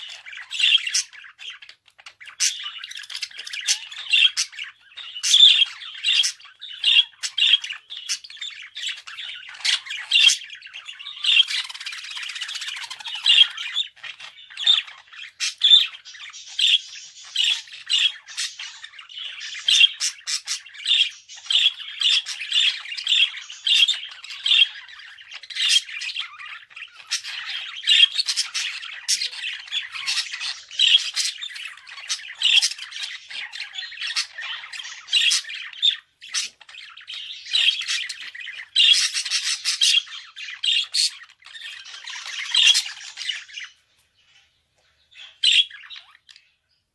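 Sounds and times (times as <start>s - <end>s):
budgerigar warbling and chirping: 0.0s - 43.8s, 45.1s - 46.6s.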